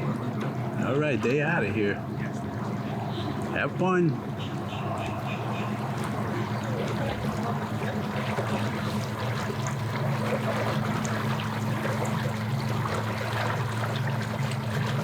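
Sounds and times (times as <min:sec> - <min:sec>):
boat motor running: 0:00.0 - 0:15.0.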